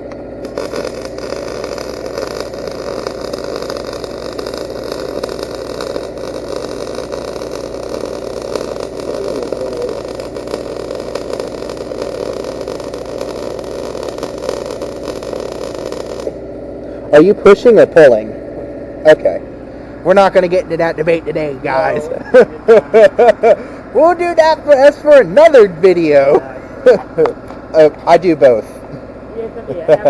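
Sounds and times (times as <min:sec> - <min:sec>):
welding arc crackling: 0:00.0 - 0:18.1
welder engine running: 0:00.0 - 0:30.0.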